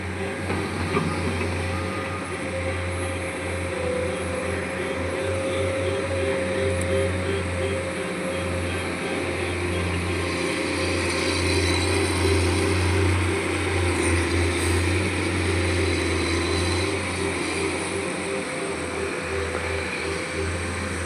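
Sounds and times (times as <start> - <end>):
diesel engine droning: 0.0 - 21.0.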